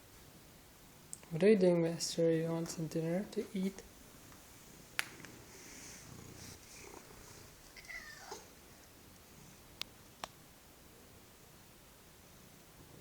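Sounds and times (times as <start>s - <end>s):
cat purring: 3.8s - 9.8s.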